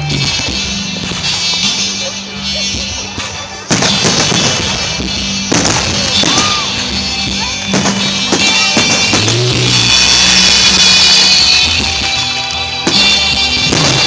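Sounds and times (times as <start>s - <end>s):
fireworks bangs: 0.0s - 14.0s
loud music: 0.0s - 14.0s.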